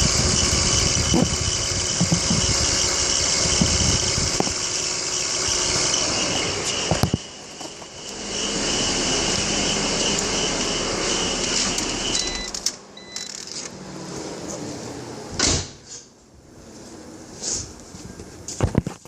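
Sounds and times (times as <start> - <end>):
car engine running with hiss: 0.0 - 12.8
faint high whine: 0.0 - 13.6.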